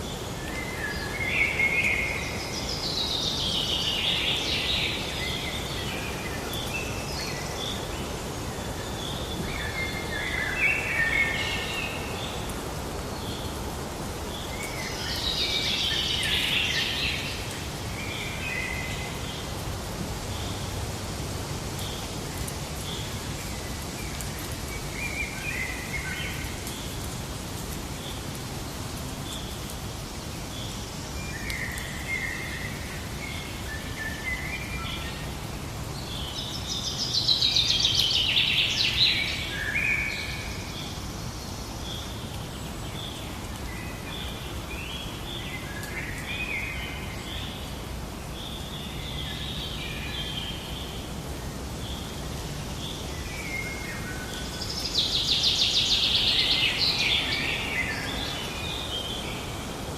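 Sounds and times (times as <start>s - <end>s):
outdoor background hiss: 0.0s - 59.9s
birds singing and chirping: 51.9s - 59.8s.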